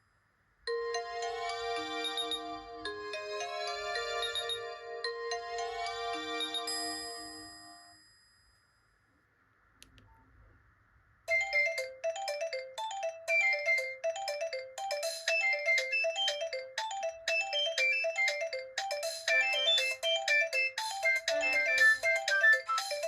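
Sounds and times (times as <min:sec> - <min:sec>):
phone ringtone melody: 0:00.7 - 0:07.9, 0:11.3 - 0:23.0
faint click: 0:09.8 - 0:10.2.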